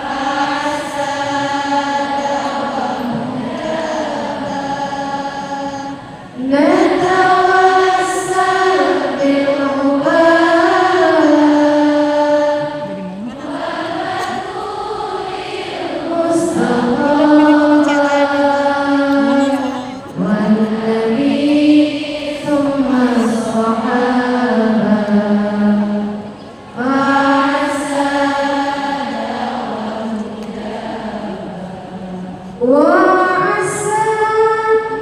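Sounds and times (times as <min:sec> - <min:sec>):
unaccompanied vocal chanting: 0:00.0 - 0:35.0.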